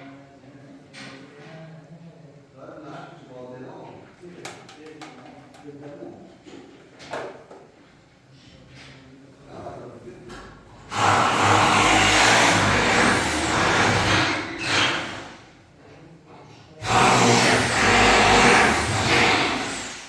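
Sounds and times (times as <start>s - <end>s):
electric sewing machine running: 10.9s - 15.4s, 16.8s - 20.0s.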